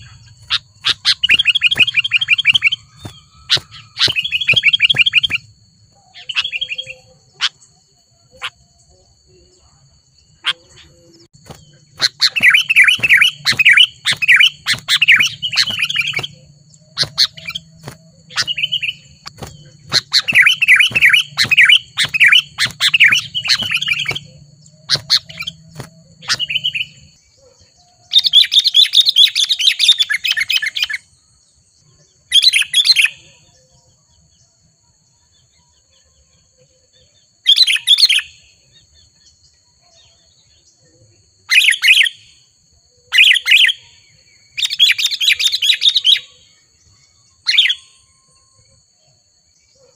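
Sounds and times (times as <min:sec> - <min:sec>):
birds bubbling calls: 0:00.0 - 0:05.5, 0:10.4 - 0:27.0
birds harsh chattering: 0:00.0 - 0:08.6, 0:10.3 - 0:30.9.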